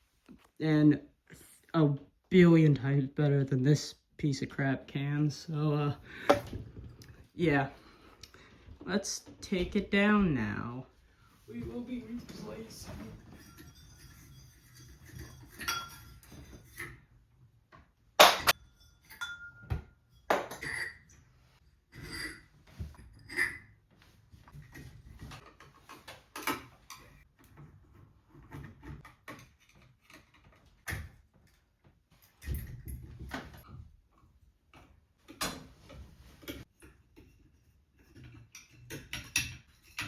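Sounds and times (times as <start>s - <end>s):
clinks and clicks of fan parts: 13.3s - 17.1s, 18.5s - 21.3s, 36.4s - 40.0s.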